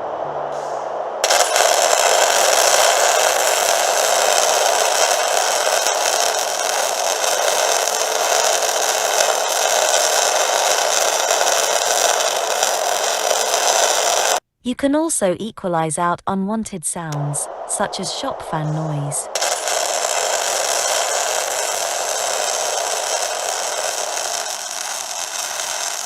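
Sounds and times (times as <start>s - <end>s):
welding arc hissing and crackling: 1.2s - 14.4s, 19.3s - 26.0s.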